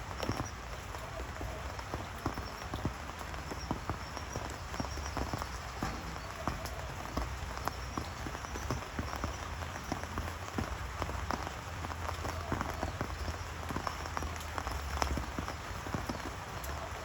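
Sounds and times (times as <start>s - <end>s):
raindrops tapping on a surface: 0.0s - 17.0s.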